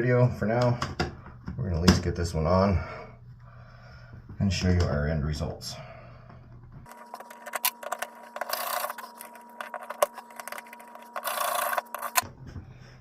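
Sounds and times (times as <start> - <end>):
screw rasping scrape: 7.1 - 12.2.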